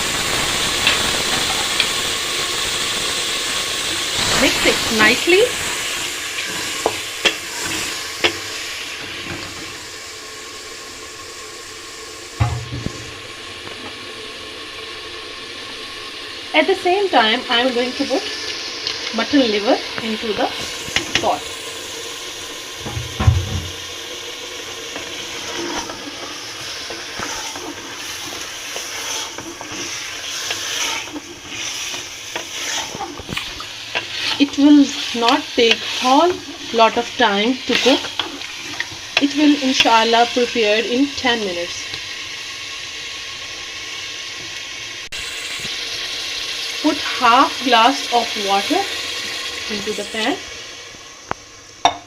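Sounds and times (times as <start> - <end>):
masala sizzling in oil: 0.0 - 52.0
dull thump: 12.4 - 13.2, 22.8 - 23.8.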